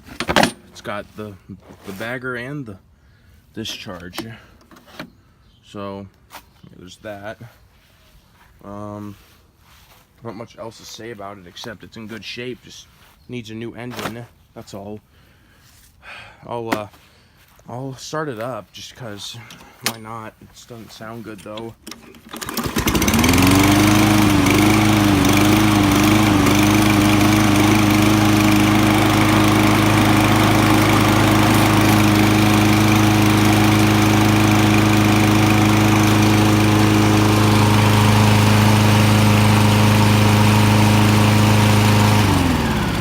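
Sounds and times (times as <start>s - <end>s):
lawn mower engine running: 21.4s - 43.0s.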